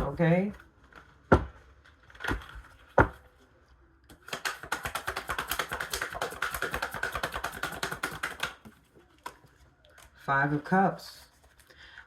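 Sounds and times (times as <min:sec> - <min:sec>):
cards tapping on table: 0:04.2 - 0:08.7.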